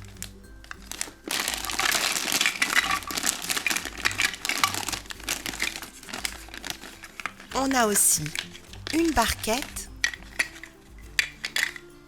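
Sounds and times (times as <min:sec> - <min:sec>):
plastic packaging crinkling: 0:00.9 - 0:07.0.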